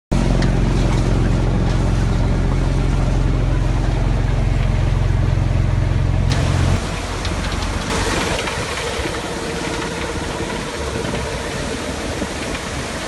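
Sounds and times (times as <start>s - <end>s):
heavy machine engine droning: 0.1s - 13.0s.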